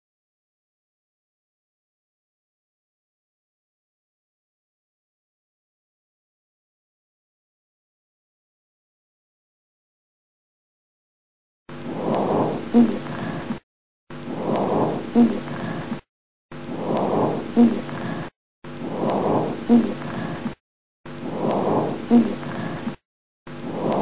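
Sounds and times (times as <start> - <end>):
breath rushing airflow: 11.7 - 24.0.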